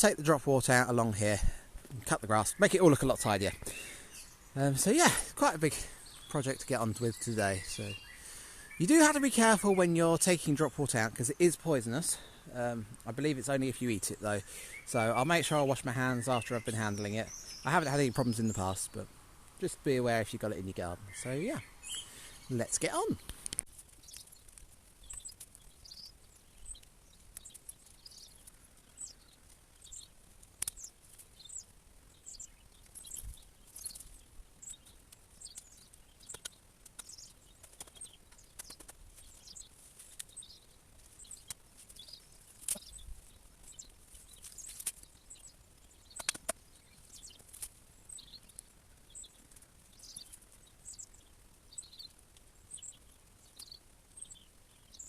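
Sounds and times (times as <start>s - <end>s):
birds chirping and singing: 0.0s - 55.0s
sharp clicks: 30.4s - 30.9s, 35.1s - 39.0s, 46.1s - 46.6s.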